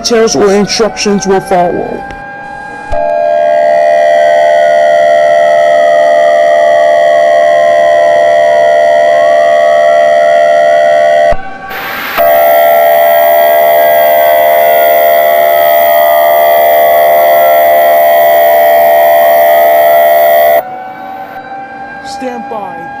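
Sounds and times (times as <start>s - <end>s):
burst of static: 11.7s - 20.6s
warning siren wailing: 12.2s - 21.4s.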